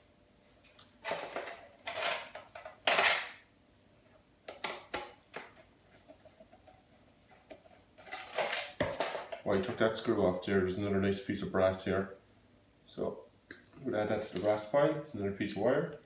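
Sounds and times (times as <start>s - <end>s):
metal parts clattering and scraping: 1.0s - 3.4s, 8.0s - 9.8s.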